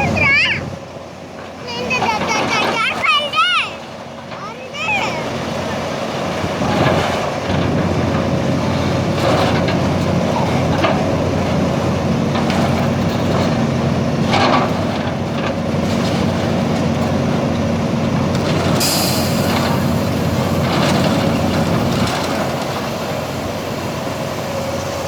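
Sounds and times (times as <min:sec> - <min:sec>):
diesel engine under load: 0:00.0 - 0:25.0
metal crunching: 0:06.2 - 0:25.0.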